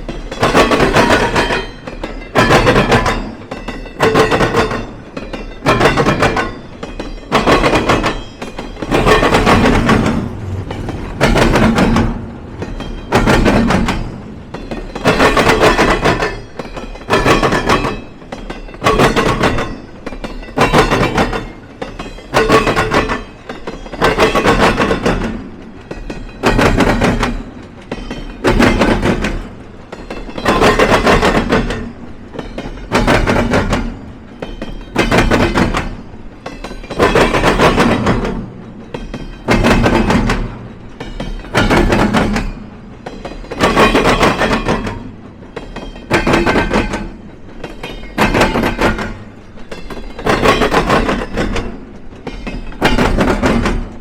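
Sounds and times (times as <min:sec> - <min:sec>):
low train rumble: 0:00.0 - 0:54.0
train wheels clanking over crossing: 0:00.0 - 0:54.0.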